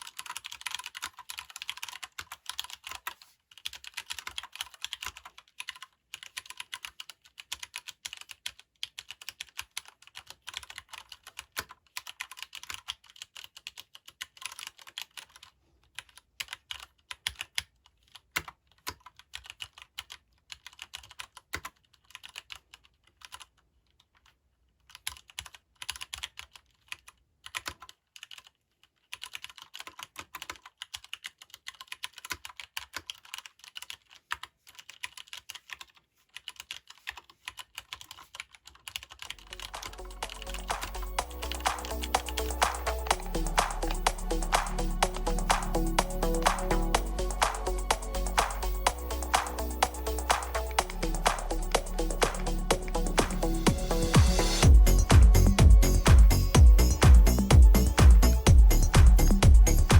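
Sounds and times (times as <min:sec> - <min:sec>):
mechanical keyboard keystroke clacks: 0:00.0 - 0:24.3, 0:24.9 - 0:43.8.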